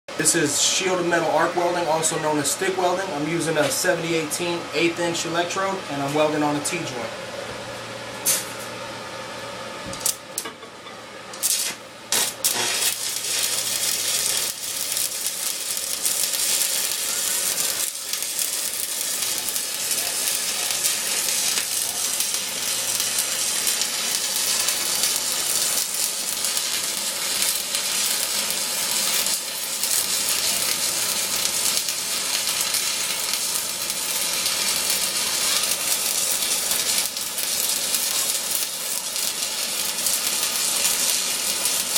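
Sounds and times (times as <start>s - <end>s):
welding arc crackling: 9.9s - 10.6s, 11.3s - 41.9s.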